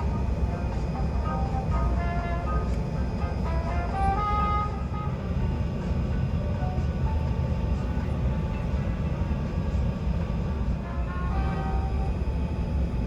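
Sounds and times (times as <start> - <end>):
aircraft cabin low rumble: 0.0 - 13.0.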